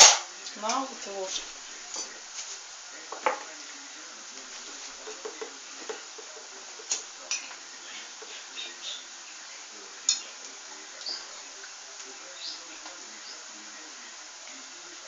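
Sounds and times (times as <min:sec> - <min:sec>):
low steady hiss: 0:00.0 - 0:15.0
spoon clinking against a plate: 0:05.0 - 0:07.6, 0:10.0 - 0:10.4.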